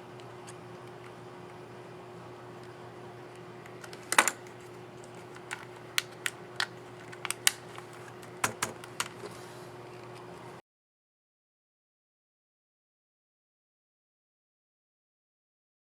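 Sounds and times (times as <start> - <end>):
laptop keyboard keys clicking: 5.1 - 9.2.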